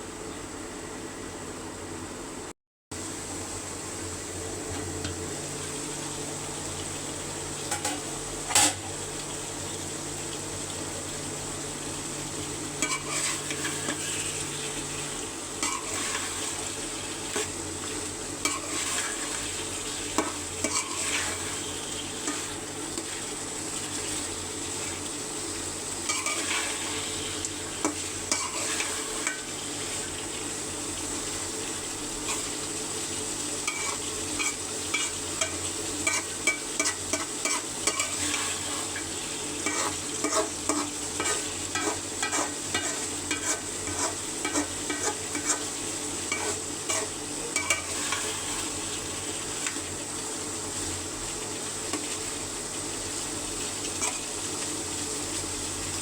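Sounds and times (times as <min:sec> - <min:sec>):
chicken sizzling in oil: 0:03.0 - 0:56.0
spoon scraping a pot: 0:12.8 - 0:14.4, 0:15.6 - 0:16.6, 0:18.4 - 0:23.3, 0:26.1 - 0:29.5, 0:33.6 - 0:48.7.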